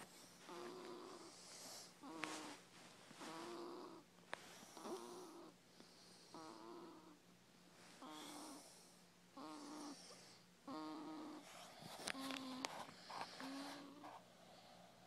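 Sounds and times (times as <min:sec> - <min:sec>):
quiet breaths: 0:00.0 - 0:15.0
faint pitched snoring: 0:00.5 - 0:02.5, 0:03.2 - 0:04.0, 0:04.7 - 0:07.2, 0:08.0 - 0:15.0.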